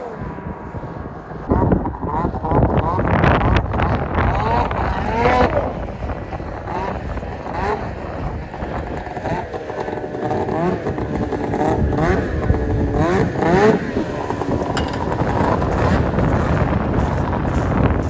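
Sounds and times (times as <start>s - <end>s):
snowmobile engine revving: 0.0s - 18.0s
wind noise on microphone: 0.0s - 18.0s.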